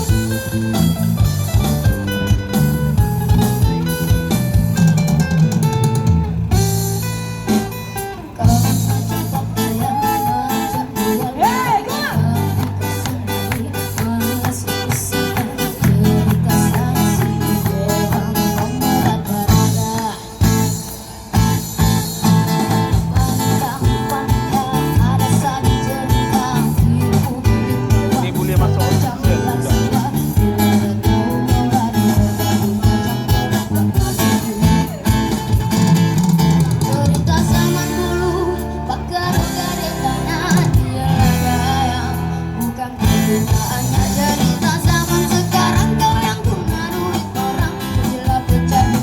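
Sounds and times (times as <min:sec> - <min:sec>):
guitar accompaniment: 0:00.0 - 0:49.0
low bass notes: 0:00.0 - 0:49.0
person singing: 0:08.1 - 0:49.0.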